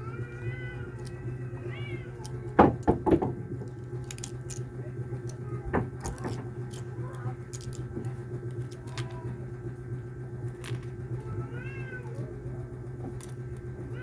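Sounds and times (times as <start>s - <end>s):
steady low hum: 0.0s - 14.0s
cat meowing: 11.2s - 12.3s.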